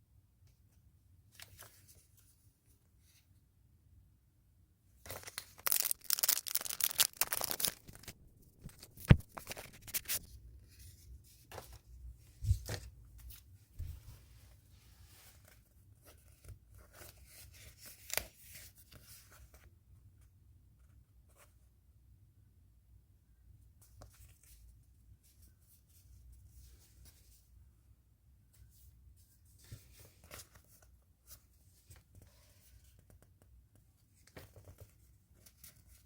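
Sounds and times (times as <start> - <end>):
rustling and handling: 4.9 - 19.7, 28.4 - 36.0
packaging ripping: 5.1 - 10.2.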